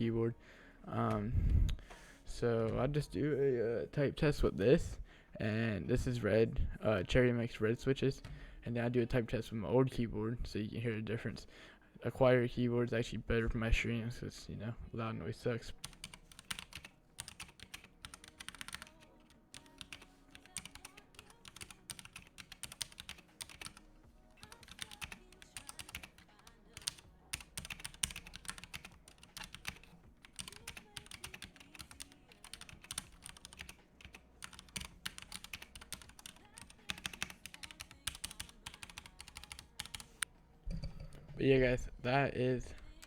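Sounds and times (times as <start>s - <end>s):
fast mechanical keyboard typing: 15.8s - 23.8s, 24.4s - 40.2s.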